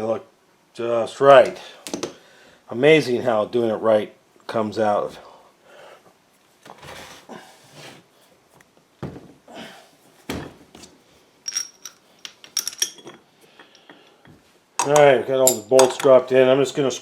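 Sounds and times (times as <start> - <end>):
steel bolts clinking: 11.4 - 14.2, 14.8 - 16.2.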